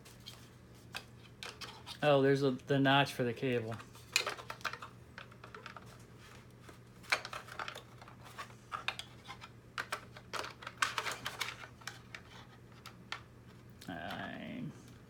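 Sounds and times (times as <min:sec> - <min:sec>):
plastic parts clicking and rattling: 0:03.7 - 0:06.0, 0:07.0 - 0:13.3.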